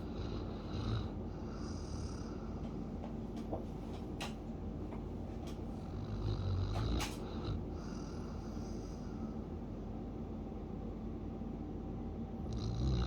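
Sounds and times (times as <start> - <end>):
dog snoring: 0.0 - 2.6, 5.8 - 9.2, 12.4 - 13.0.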